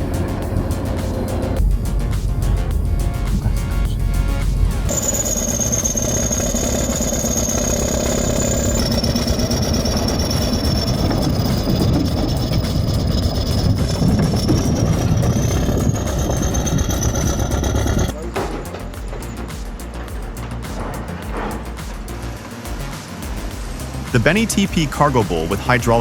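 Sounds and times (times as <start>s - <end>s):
bulldozer engine under load: 0.0s - 18.3s
high-pitched machine squeal: 4.8s - 19.4s.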